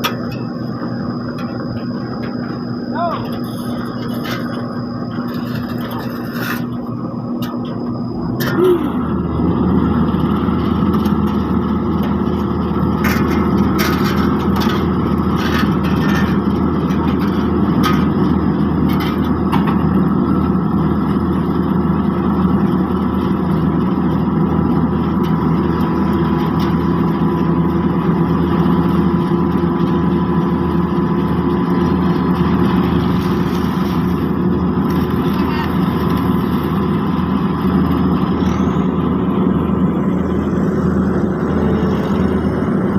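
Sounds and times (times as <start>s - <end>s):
diesel engines running: 0.0s - 42.9s
clanks and knocks: 10.9s - 20.0s.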